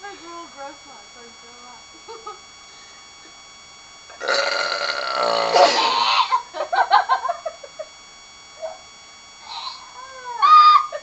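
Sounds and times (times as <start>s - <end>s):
long loud burp: 4.1s - 6.4s.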